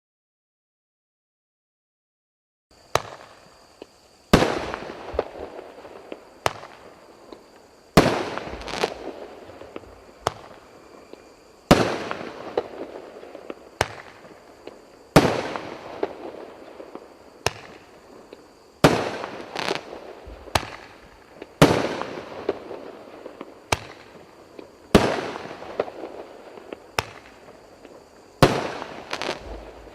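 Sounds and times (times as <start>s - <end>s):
firework comet hiss: 2.8s - 29.9s
sharp firework cracks: 2.9s - 16.7s, 17.4s - 29.9s
firework launch thumps: 8.0s - 9.0s, 28.4s - 29.9s.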